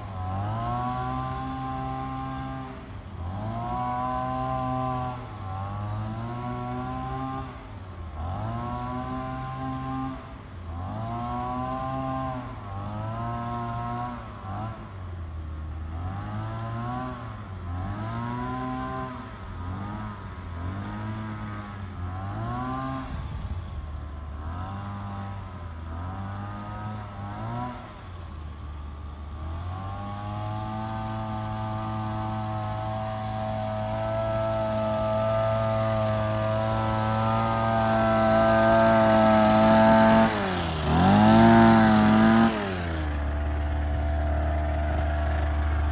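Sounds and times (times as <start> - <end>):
small petrol engine revving: 0.0 - 45.9.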